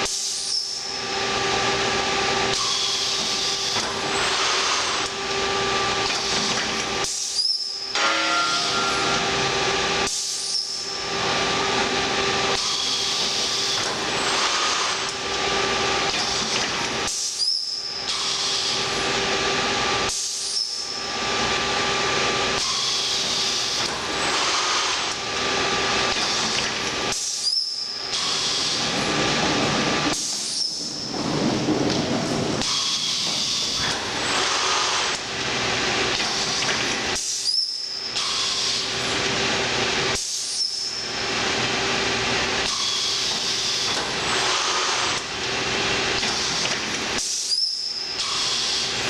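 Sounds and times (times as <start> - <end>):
pneumatic air hiss: 26.2 - 28.8, 30.1 - 31.0, 32.6 - 35.2, 36.2 - 38.9, 42.6 - 45.2, 46.2 - 49.0.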